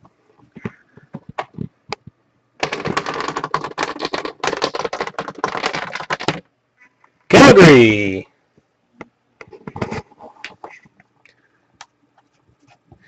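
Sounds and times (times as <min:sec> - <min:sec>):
computer keyboard typing: 0:02.6 - 0:06.4.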